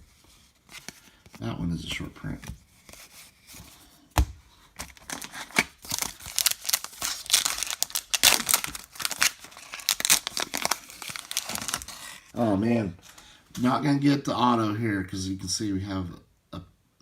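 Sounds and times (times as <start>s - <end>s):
wrapper tearing and crinkling: 4.8s - 12.3s.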